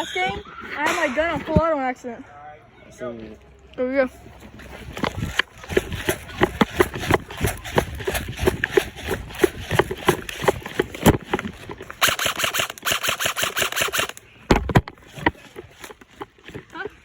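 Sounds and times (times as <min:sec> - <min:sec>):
footsteps: 0:00.0 - 0:02.2, 0:03.2 - 0:12.5
low thumps: 0:00.0 - 0:02.2
rustling: 0:04.0 - 0:17.0
airsoft gun firing rapidly: 0:12.0 - 0:14.2.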